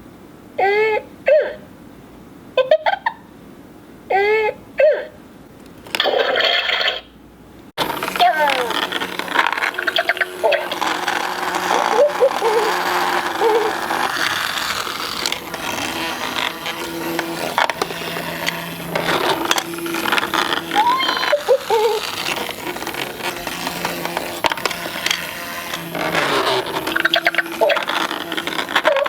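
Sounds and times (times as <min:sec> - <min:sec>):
small motor hum: 0:07.8 - 0:29.0.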